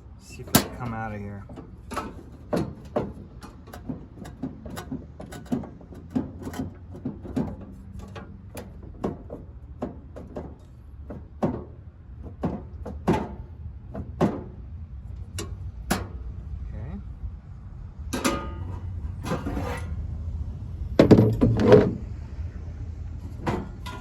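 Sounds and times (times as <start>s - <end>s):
clicks and knocks of grill parts: 0.2s - 16.3s, 18.1s - 19.9s, 23.2s - 24.0s.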